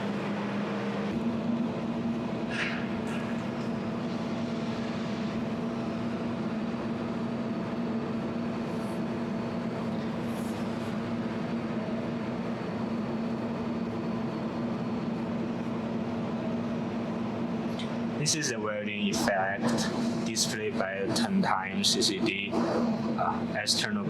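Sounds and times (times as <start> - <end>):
cooling unit humming: 0.0 - 24.0.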